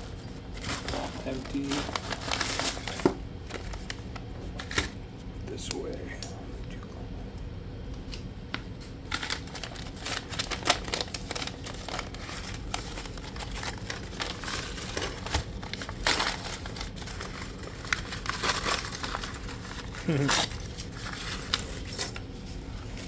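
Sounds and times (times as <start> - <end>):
packaging rustling: 0.0 - 4.9, 9.0 - 22.3.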